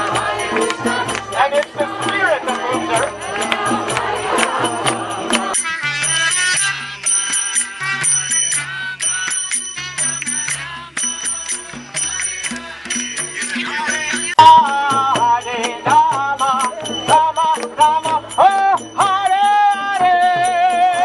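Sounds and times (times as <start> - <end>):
group chanting: 0.0 - 8.2
hand cymbals clashing: 0.0 - 21.0.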